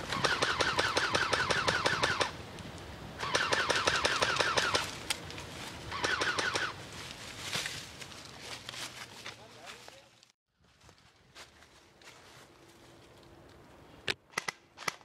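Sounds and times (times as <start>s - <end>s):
airsoft rifle firing bursts: 0.1s - 2.3s, 3.2s - 4.8s, 5.9s - 6.7s.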